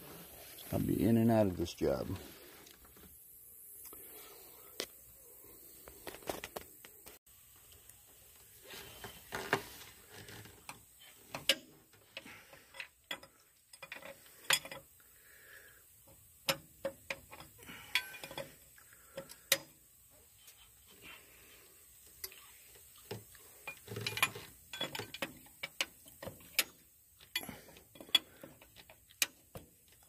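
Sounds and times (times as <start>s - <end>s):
hand tools clinking on metal: 11.3s - 14.9s, 16.5s - 19.7s, 23.6s - 30.0s.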